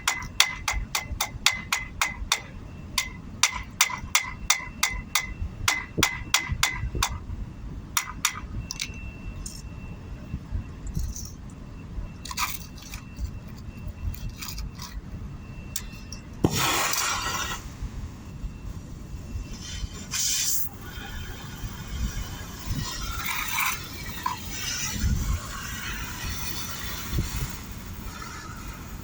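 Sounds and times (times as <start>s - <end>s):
metal striking metal: 0.0s - 7.2s, 8.0s - 8.9s
short hiss: 19.6s - 20.7s.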